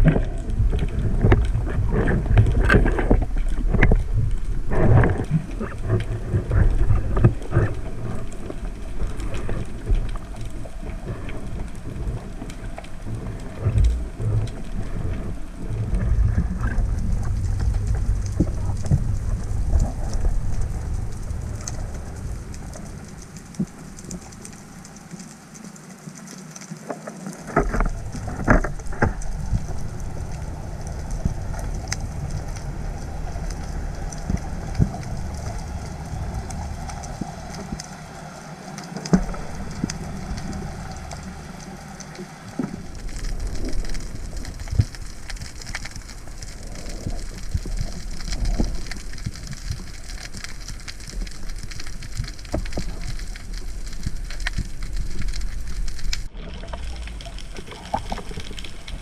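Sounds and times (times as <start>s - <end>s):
low rumble of water movement: 0.0s - 59.0s
underwater clicks crackling: 0.0s - 59.0s.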